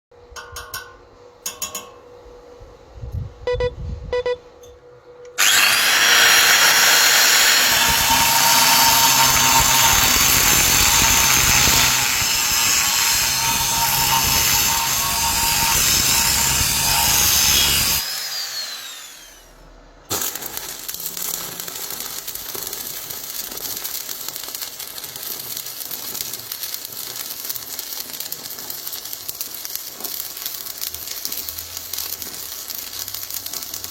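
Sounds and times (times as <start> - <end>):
power grinder whining: 5.4 - 19.6
welding arc hissing: 5.4 - 33.9.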